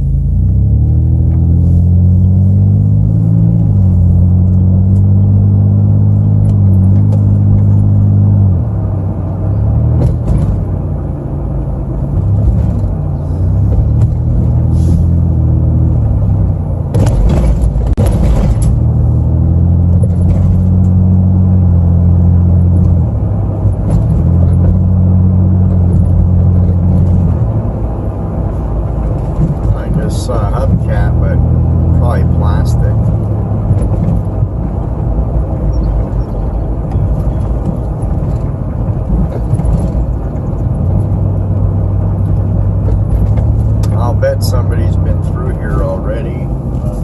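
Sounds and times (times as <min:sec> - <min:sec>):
vehicle engine and road drone: 0:00.0 - 0:47.0.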